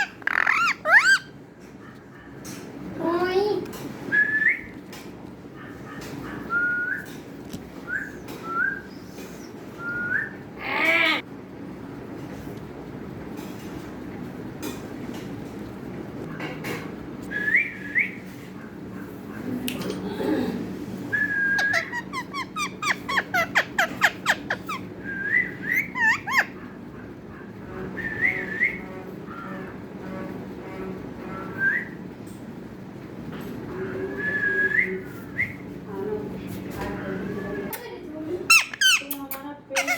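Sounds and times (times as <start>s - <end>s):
parrot whistling: 0.0s - 1.3s, 21.2s - 26.6s.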